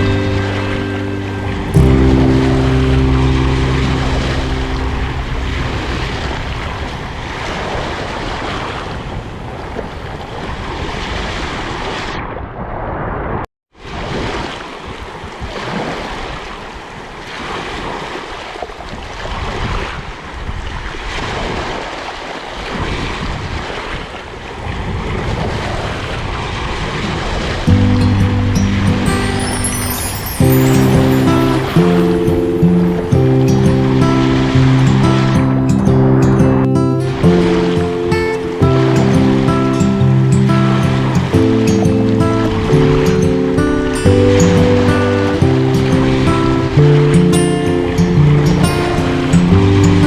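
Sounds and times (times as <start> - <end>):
wind buffeting microphone: 0.0 - 7.1
sea surf washing: 0.0 - 8.7, 27.5 - 50.0.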